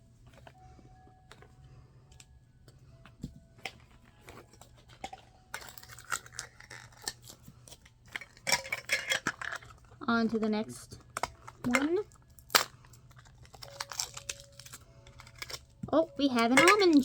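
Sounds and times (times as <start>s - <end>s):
packaging rustling: 0.2s - 17.0s
plastic toy pieces clicking: 10.8s - 17.0s.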